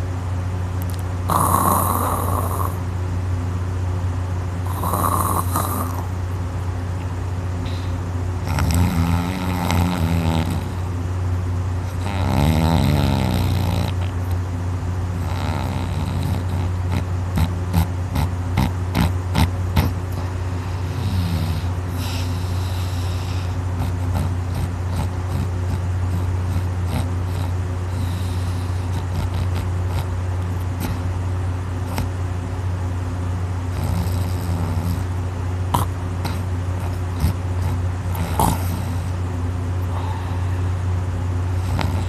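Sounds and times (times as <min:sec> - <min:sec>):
person snoring heavily: 0:01.3 - 0:02.8, 0:04.7 - 0:06.1, 0:07.7 - 0:10.8, 0:11.9 - 0:14.1, 0:15.2 - 0:30.1, 0:33.7 - 0:35.1, 0:35.7 - 0:39.2, 0:41.5 - 0:42.0.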